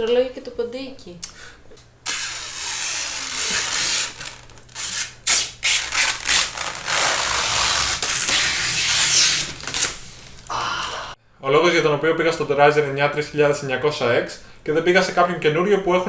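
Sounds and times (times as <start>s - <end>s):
rubbing and rustling: 1.8s - 10.5s.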